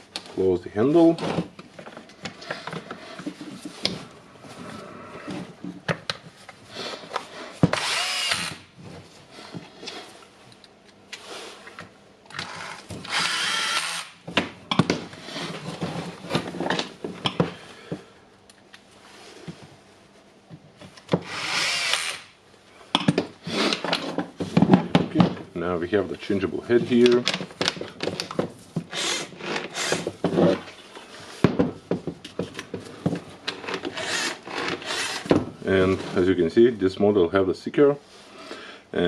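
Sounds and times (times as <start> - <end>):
power tool motor bursts: 7.7 - 8.7, 12.4 - 14.2, 21.2 - 22.3, 34.0 - 35.3.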